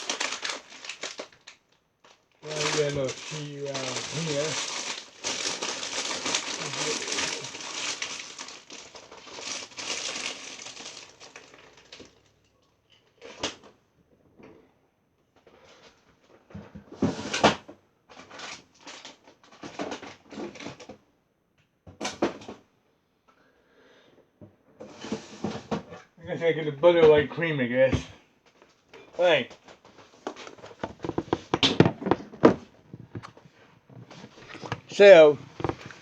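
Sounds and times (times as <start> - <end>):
packaging crinkling: 0.0 - 12.3, 18.3 - 19.4, 30.2 - 36.0
kitchen items clattering: 2.4 - 12.3, 30.2 - 36.0.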